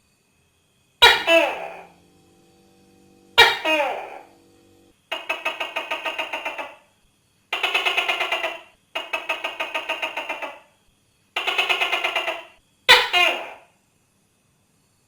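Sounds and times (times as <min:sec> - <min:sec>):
gecko rattling clicking call: 0:05.1 - 0:06.8, 0:07.6 - 0:10.6, 0:11.4 - 0:12.6.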